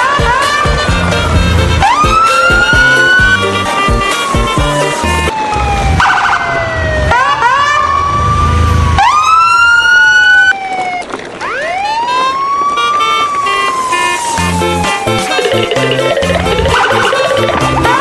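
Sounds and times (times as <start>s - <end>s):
emergency vehicle sirens wailing: 0.0s - 18.0s.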